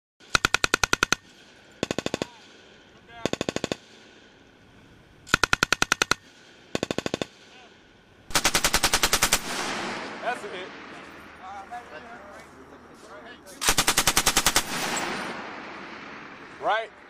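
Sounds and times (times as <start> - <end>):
machine gun bursts: 0.2 - 2.4, 3.2 - 3.8, 5.3 - 7.3, 8.3 - 9.9, 13.6 - 15.4.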